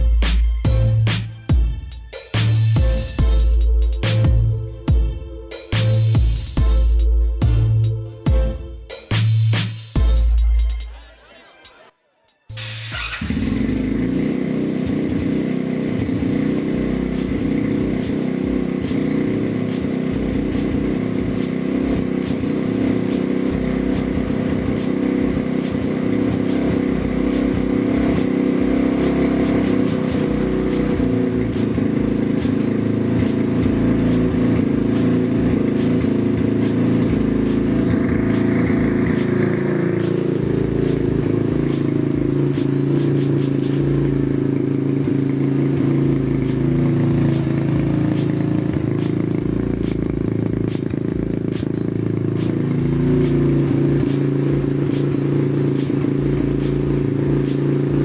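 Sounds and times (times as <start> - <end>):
minibike engine running: 12.6 - 58.0.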